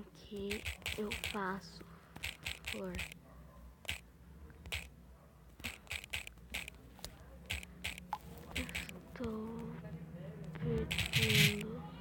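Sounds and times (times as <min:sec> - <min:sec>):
typing on a smartphone: 0:00.3 - 0:01.5, 0:02.1 - 0:03.2, 0:03.8 - 0:04.9, 0:05.5 - 0:06.8, 0:07.5 - 0:09.4, 0:10.8 - 0:11.7.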